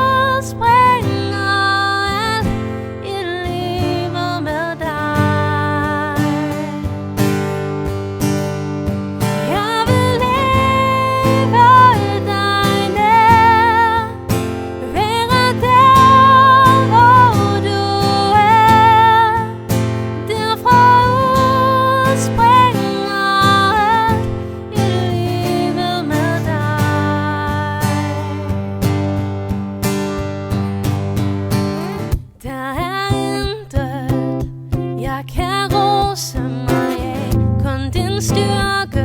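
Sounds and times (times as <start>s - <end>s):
person singing with vibrato: 0.0s - 7.0s, 9.4s - 28.5s, 35.0s - 39.0s
strummed acoustic guitar: 0.0s - 39.0s.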